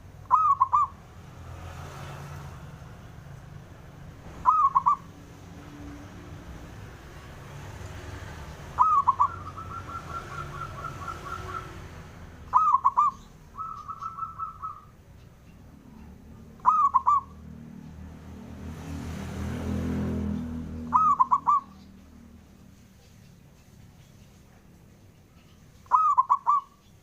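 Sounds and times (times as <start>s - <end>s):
dove cooing: 0.2s - 1.0s, 4.4s - 5.2s, 8.6s - 15.0s, 15.8s - 17.4s, 20.8s - 21.9s, 25.8s - 26.8s.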